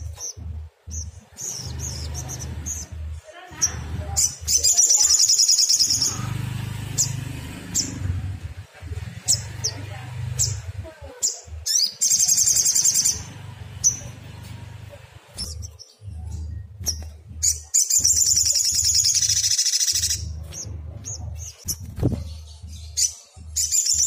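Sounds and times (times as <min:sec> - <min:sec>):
bird high trill: 0:03.6 - 0:06.4, 0:11.2 - 0:14.2, 0:17.4 - 0:21.6
bird sharp chips: 0:16.8 - 0:22.2.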